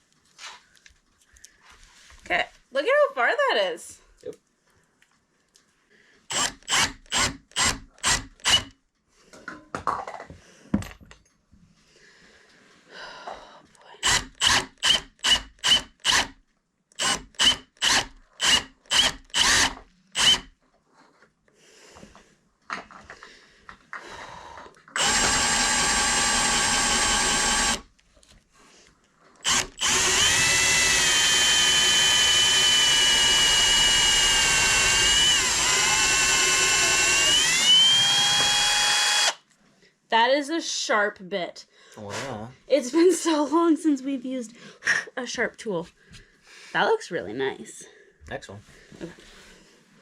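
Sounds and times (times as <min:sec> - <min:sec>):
power drill drilling: 0:06.3 - 0:08.7, 0:14.0 - 0:16.3, 0:17.0 - 0:20.5, 0:25.0 - 0:27.9, 0:29.4 - 0:39.4.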